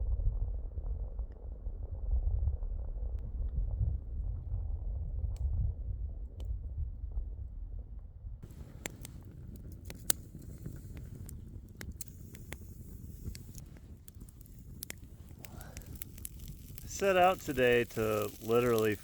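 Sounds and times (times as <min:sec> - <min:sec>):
wind buffeting microphone: 0:00.0 - 0:19.0
campfire crackling and popping: 0:08.4 - 0:19.0.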